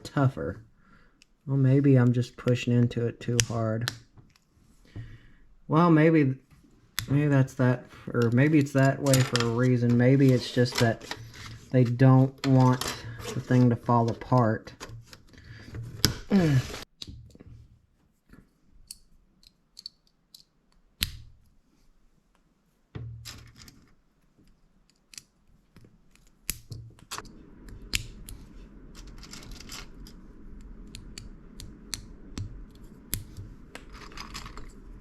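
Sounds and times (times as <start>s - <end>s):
plastic bricks clicking together: 18.9s - 21.2s
steady low hum: 26.6s - 35.0s.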